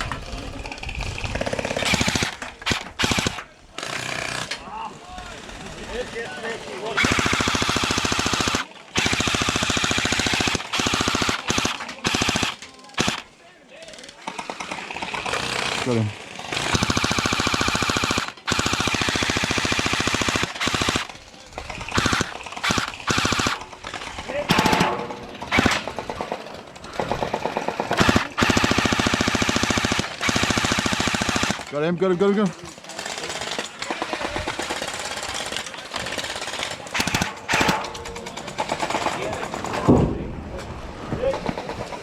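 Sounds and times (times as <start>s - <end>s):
gel blaster rifle firing full-auto: 1.4s - 4.5s, 6.9s - 13.3s, 14.3s - 26.2s, 27.2s - 31.7s, 36.0s - 37.9s.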